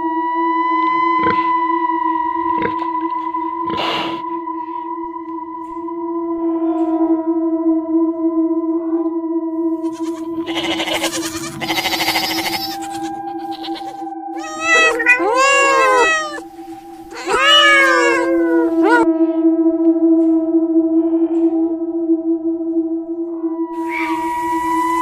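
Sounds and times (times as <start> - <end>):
droning ambient music: 0.0 - 25.0
cat meowing: 9.8 - 16.5, 17.1 - 19.1, 23.8 - 24.5.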